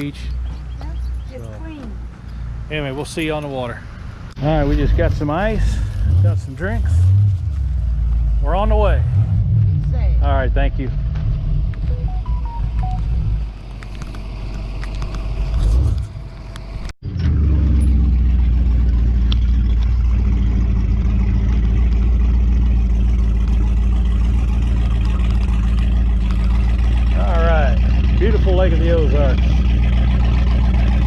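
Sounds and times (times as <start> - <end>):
vehicle running on road: 0.0 - 31.0
outboard motor running: 17.9 - 31.0.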